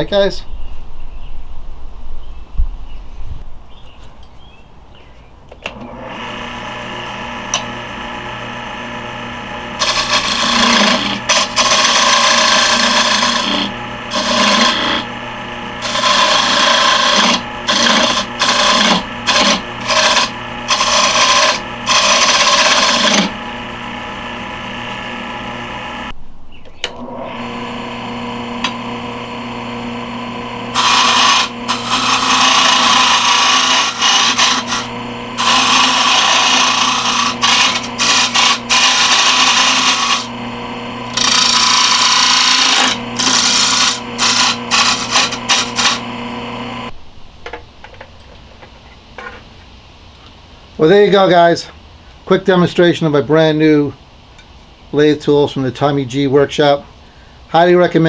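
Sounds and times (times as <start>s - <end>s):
tool scraping spinning wood: 5.6s - 26.1s, 26.9s - 46.9s
lathe motor hum: 5.7s - 26.2s, 26.9s - 46.9s.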